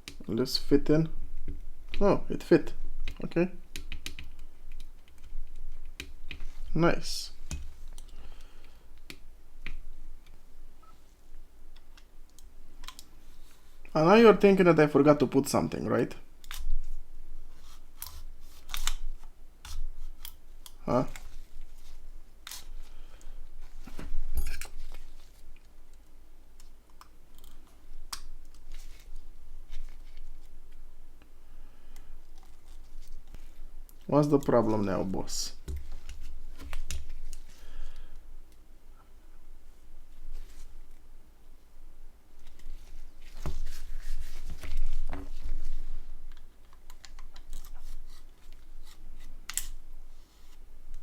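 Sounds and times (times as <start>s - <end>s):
phone parts clicking and scraping: 23.9s - 25.3s.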